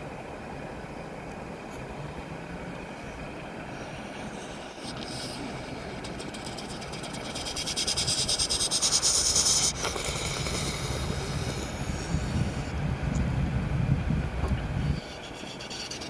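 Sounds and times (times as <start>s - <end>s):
diesel engine low rumble: 0.0s - 15.9s
loud pulsing hiss: 2.0s - 13.0s.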